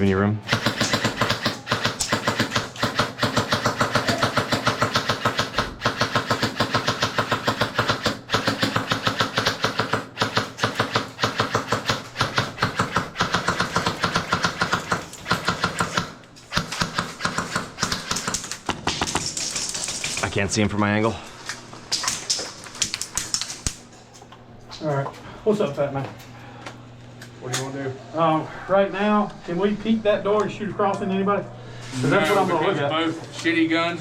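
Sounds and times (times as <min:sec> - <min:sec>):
airsoft gun full-auto firing: 0:00.5 - 0:19.4.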